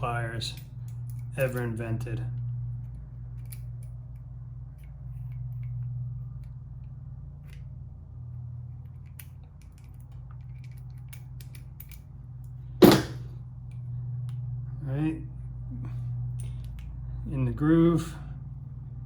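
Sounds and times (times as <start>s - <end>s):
low hum: 0.0s - 19.0s
metallic clicks of snap ring: 8.8s - 12.0s.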